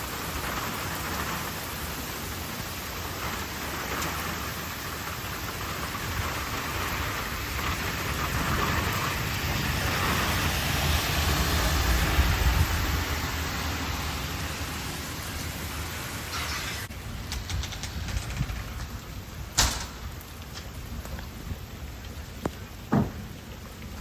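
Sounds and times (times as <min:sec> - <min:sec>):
heavy rain pouring: 0:00.0 - 0:24.0
low thunder rumble: 0:03.0 - 0:22.0.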